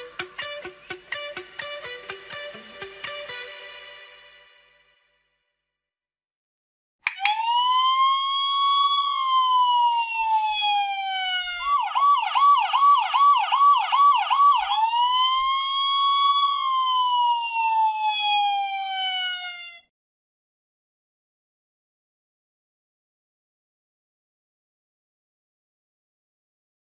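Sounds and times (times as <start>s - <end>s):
toy fire truck siren: 7.1s - 19.9s.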